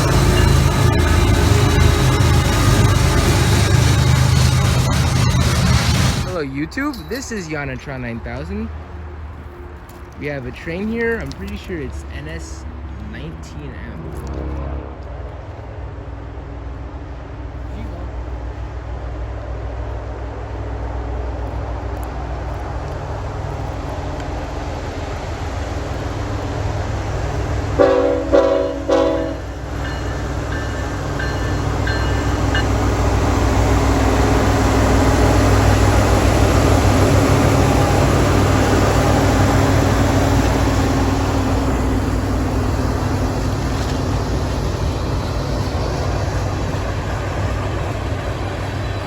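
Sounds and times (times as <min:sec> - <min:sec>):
train rumbling past: 0:00.0 - 0:49.0
locomotive horn blasts: 0:27.8 - 0:29.6.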